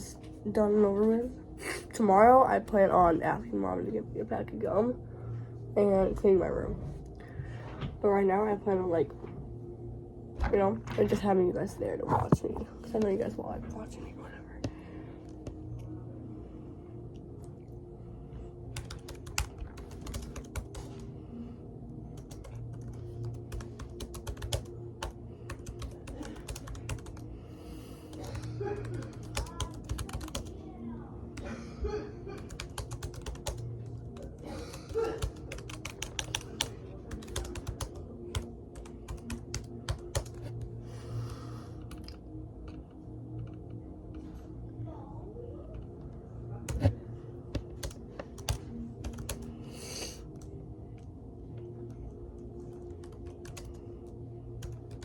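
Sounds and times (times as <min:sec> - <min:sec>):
laptop keyboard typing: 0:18.8 - 0:21.1, 0:22.1 - 0:27.3, 0:28.1 - 0:30.6, 0:32.3 - 0:40.6, 0:46.7 - 0:49.6, 0:52.7 - 0:53.9, 0:54.6 - 0:55.0.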